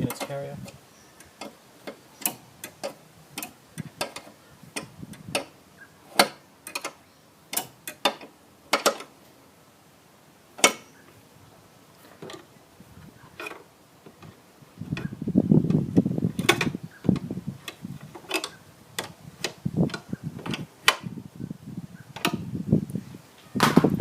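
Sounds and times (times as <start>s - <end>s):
ratchet metal clicks: 0.0s - 5.5s, 6.1s - 9.1s, 17.6s - 21.0s.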